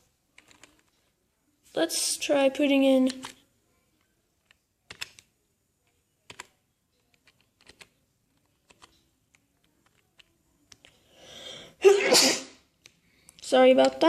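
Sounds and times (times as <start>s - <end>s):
keyboard key clicks: 4.4s - 5.3s.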